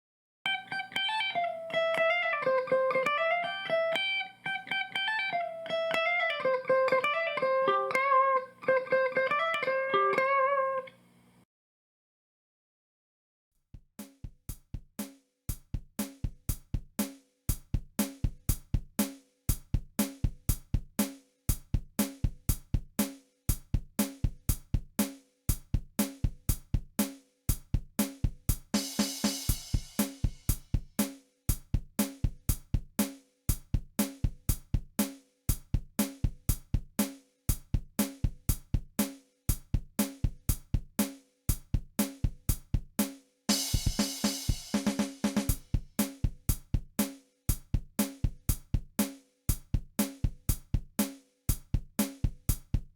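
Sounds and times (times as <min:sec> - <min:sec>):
drum-kit beat: 0:13.8 - 0:52.9.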